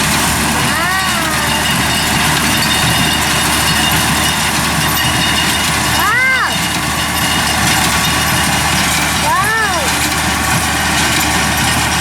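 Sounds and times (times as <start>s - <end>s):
high rising and falling call: 0.0s - 3.2s
engine idling: 0.0s - 12.0s.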